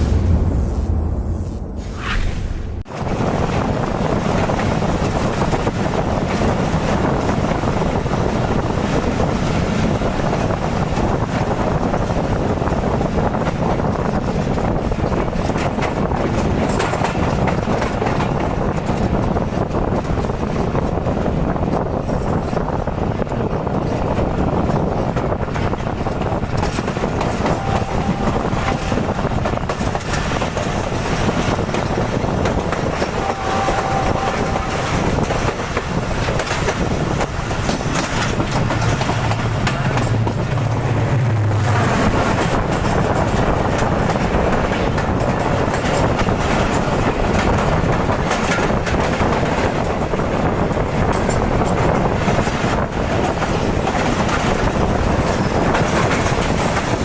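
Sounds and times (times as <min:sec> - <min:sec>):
deep hum: 0:00.0 - 0:02.9, 0:38.5 - 0:42.9
train wheels clattering on rails: 0:02.9 - 0:57.0.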